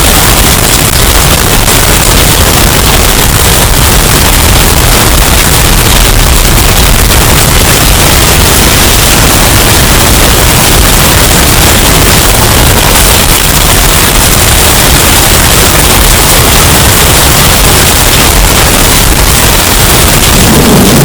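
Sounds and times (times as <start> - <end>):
distorted hurricane wind: 0.0 - 21.0.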